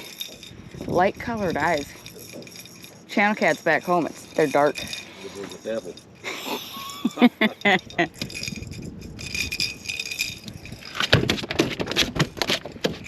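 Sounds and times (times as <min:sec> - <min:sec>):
fishing gear rattling and clinking: 0:00.0 - 0:13.0
sharp knocks and clatter: 0:10.8 - 0:13.0.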